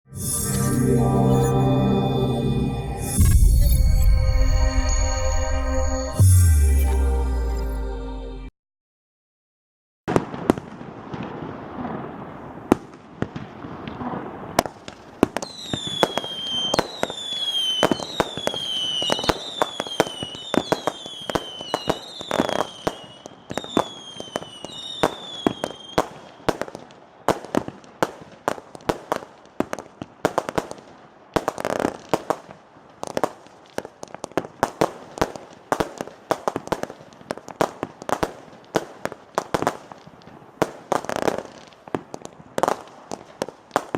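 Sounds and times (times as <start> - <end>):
falling firework whistles: 0.1 - 6.9, 15.4 - 26.6
firework shots and bangs: 10.1 - 43.9.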